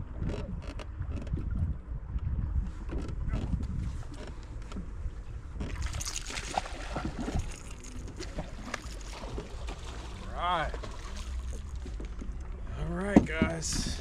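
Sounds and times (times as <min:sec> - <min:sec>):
wind rumbling on microphone: 0:00.0 - 0:14.0
water splashing: 0:05.3 - 0:14.0.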